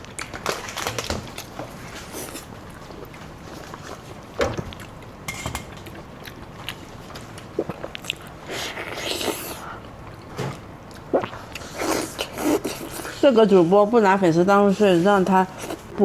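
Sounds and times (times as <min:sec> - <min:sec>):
person chewing food: 0:01.4 - 0:13.2.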